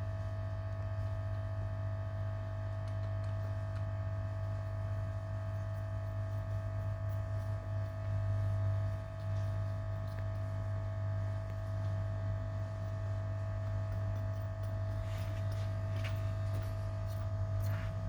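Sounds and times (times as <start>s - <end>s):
electrical hum: 0.0s - 18.0s.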